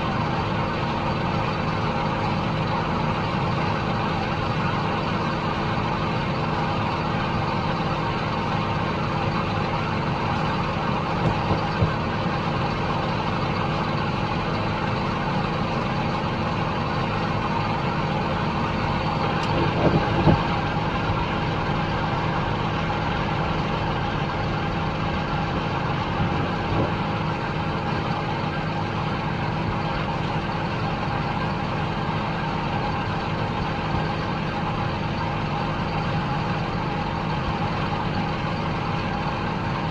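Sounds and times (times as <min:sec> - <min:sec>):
heavy machinery engine drone: 0:00.0 - 0:39.9.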